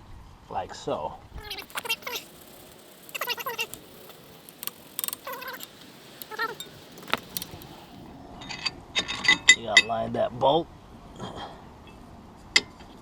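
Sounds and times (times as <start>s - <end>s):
small metal parts clinking: 1.3s - 8.1s.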